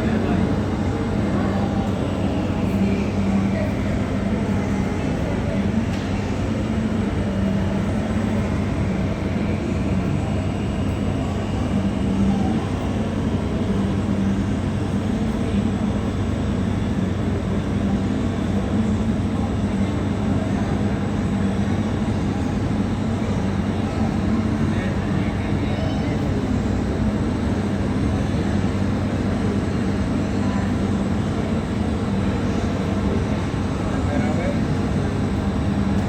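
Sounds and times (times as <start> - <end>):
jet engines rumbling: 0.0 - 17.5
constant hum: 0.0 - 36.0.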